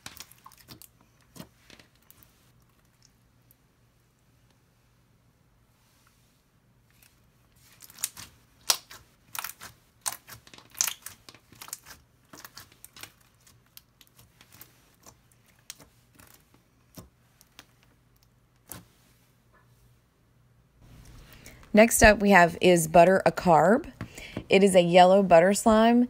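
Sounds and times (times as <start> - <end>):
slime beads crunching and clicking: 7.7 - 16.4.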